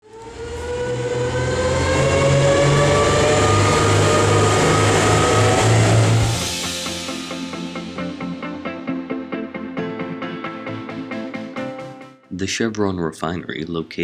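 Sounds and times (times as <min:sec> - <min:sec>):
powerboat engine accelerating: 0:00.0 - 0:08.8.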